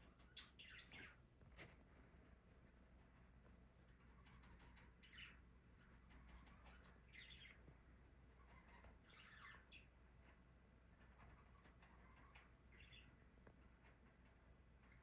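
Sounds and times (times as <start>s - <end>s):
faint bird chirps: 0.0s - 1.2s, 3.8s - 13.8s.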